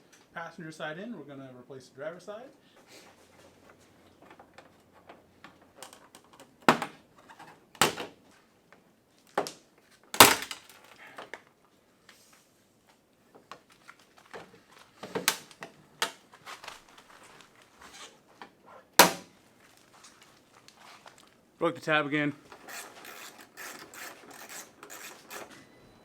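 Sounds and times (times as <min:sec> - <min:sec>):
quiet scuffing: 0:16.2 - 0:18.4.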